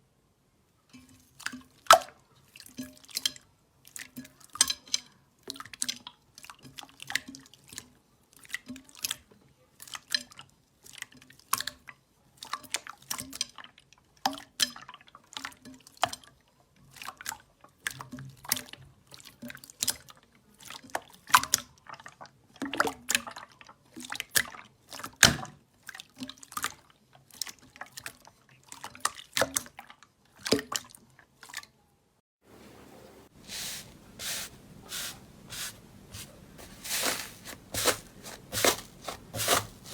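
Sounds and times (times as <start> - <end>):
soft hiss: 32.4 - 39.9.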